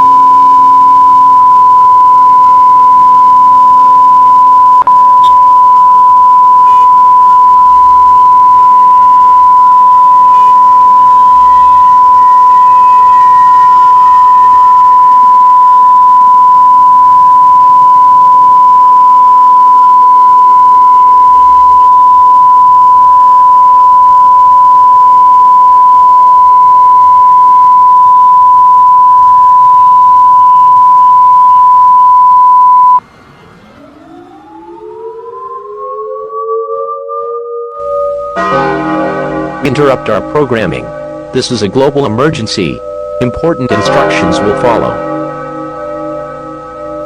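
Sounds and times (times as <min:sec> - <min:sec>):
high broadcast test tone: 0:00.0 - 0:47.0
siren-like rising tone: 0:00.0 - 0:47.0
faint wavering wail: 0:33.6 - 0:47.0.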